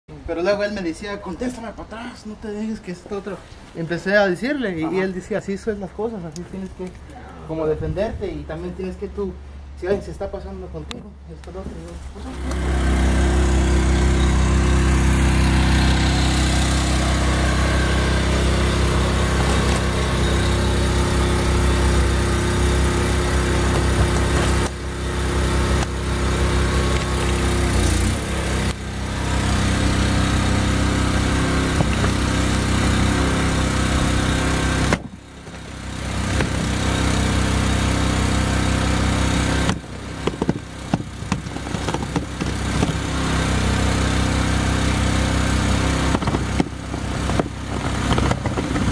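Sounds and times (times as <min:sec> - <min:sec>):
hydraulic pump engine running: 0:12.0 - 0:48.9.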